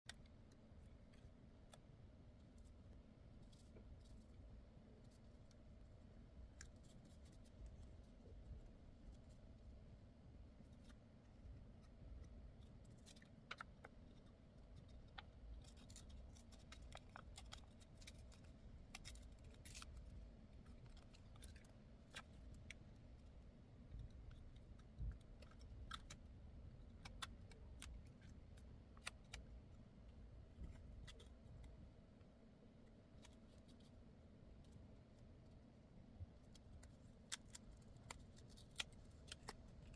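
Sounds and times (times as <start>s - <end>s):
low steady hum: 0.1s - 39.9s.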